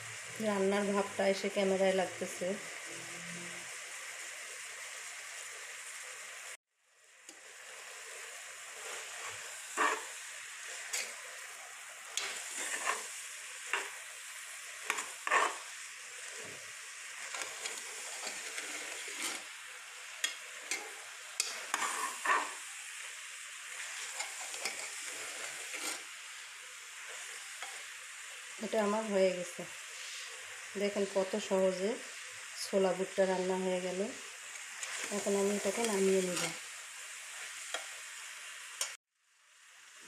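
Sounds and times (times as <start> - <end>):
chickpeas sizzling in oil: 0.0 - 40.0
spatula scraping a pan: 7.8 - 14.1, 14.7 - 22.7, 23.7 - 26.2, 34.6 - 38.0.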